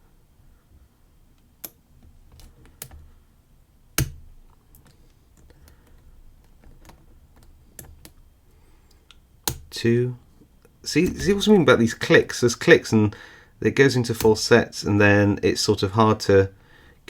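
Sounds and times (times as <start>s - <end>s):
lock pick clicking and scraping: 4.0s - 8.2s.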